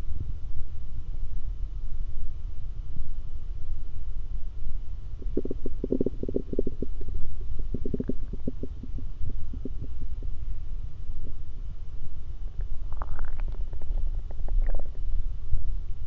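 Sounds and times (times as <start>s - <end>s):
steady low rumble: 0.0s - 16.0s
stomach gurgling: 5.2s - 10.4s, 12.6s - 15.2s.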